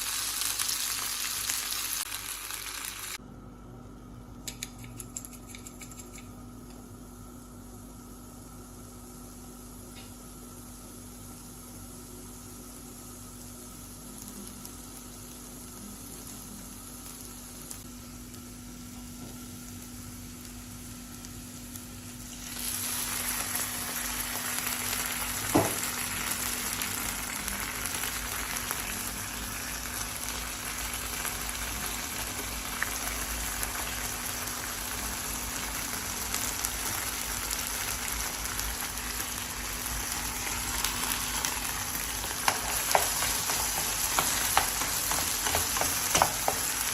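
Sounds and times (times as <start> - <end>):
chicken wings sizzling in hot oil: 0.0 - 3.2, 7.3 - 46.9
faint steady hum: 0.0 - 46.9.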